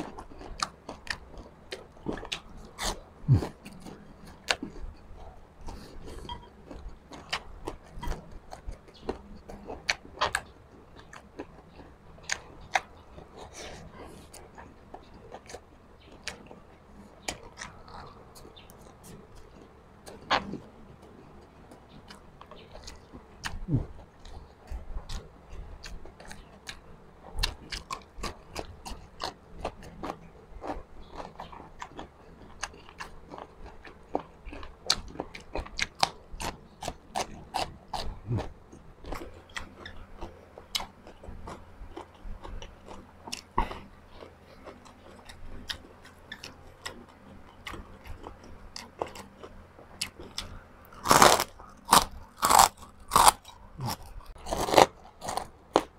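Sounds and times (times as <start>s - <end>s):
person chewing softly: 0.0s - 55.9s
person crunching crisp food: 27.4s - 55.9s.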